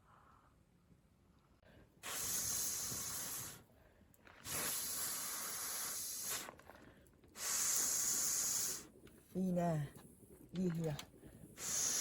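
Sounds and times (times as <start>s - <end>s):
hissing rushes of air: 2.0s - 3.7s, 4.4s - 6.5s, 7.4s - 8.9s, 11.6s - 12.0s.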